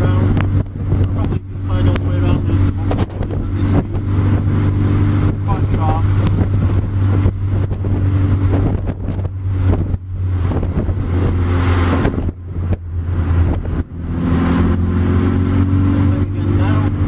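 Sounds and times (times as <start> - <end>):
car engine running: 0.0 - 17.0
tyre and wind noise: 0.0 - 17.0.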